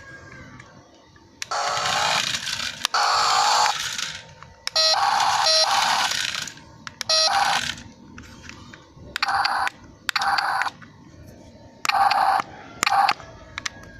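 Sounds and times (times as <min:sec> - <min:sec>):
electronic truck sound effects: 0:01.4 - 0:07.9.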